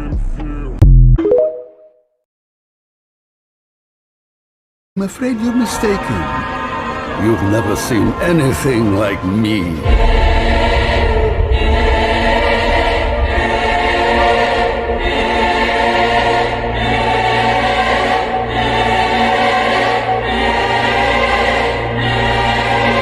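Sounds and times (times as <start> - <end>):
deep bass: 0.0 - 1.2, 9.8 - 17.6
choir singing held chords: 5.2 - 23.0.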